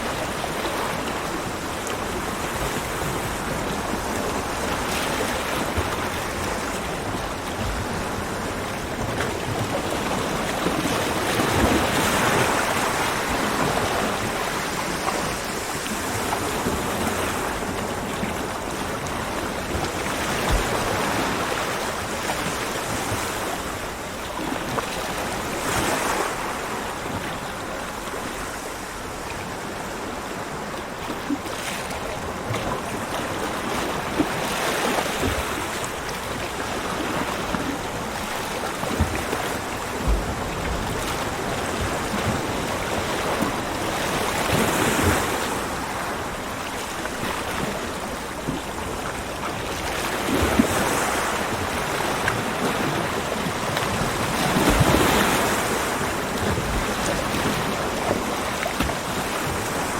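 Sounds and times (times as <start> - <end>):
ocean surf breaking on beach: 0.0 - 59.9.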